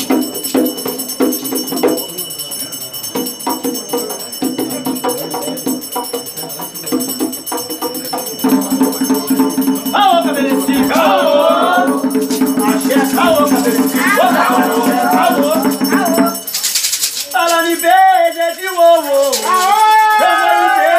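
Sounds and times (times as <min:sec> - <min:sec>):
rhythmic percussion strokes: 0:00.0 - 0:20.9
voices singing a chant: 0:08.5 - 0:16.5, 0:17.5 - 0:20.9.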